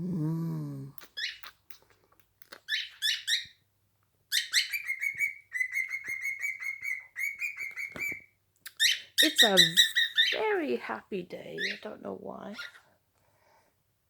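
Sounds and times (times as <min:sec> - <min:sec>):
low voice-like sound: 0:00.0 - 0:01.0
bird chirping: 0:01.0 - 0:01.9, 0:02.5 - 0:03.6, 0:04.3 - 0:10.6, 0:11.5 - 0:11.9
bird whistling repeated notes: 0:04.3 - 0:10.3.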